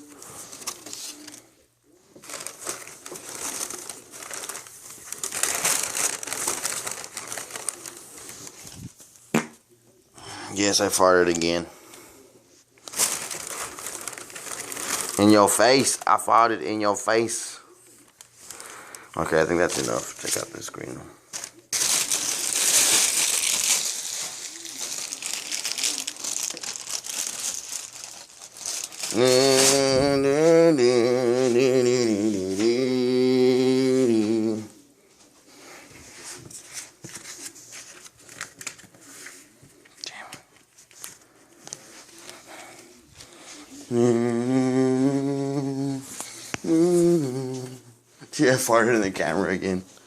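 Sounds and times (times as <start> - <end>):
plastic crinkling and rustling: 0.0 - 9.3, 12.8 - 16.2, 17.9 - 32.9, 35.2 - 44.0.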